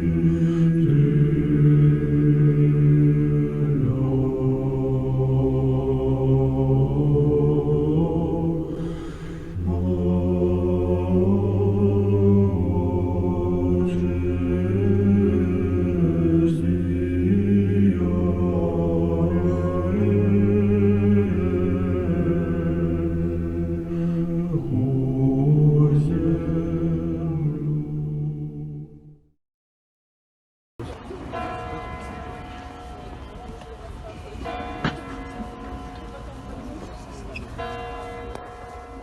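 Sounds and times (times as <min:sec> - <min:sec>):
choir singing held chords: 0:00.0 - 0:29.2
deep bass voices: 0:00.0 - 0:29.3.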